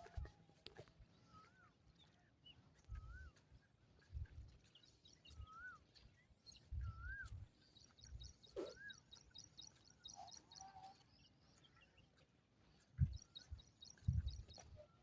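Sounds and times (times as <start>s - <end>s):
faint whistled bird calls: 1.0s - 2.2s, 2.8s - 4.1s, 4.7s - 12.2s
wind rumble on microphone: 6.5s - 8.7s, 12.9s - 15.0s.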